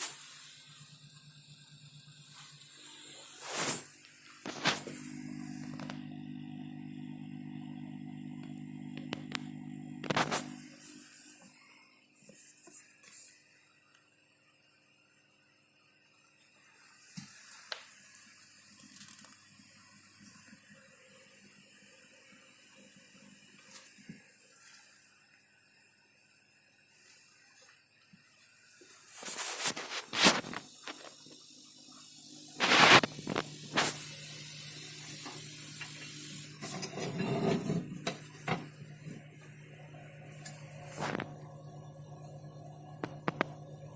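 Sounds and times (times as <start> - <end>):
laser cutter hissing: 0.0 - 11.4, 29.2 - 37.0
laser cutting machine humming: 4.5 - 11.3.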